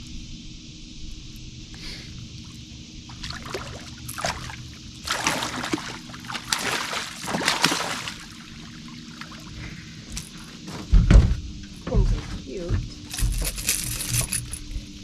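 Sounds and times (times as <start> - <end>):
steady low hum: 0.0 - 15.0
water splashing and sloshing: 2.4 - 11.3.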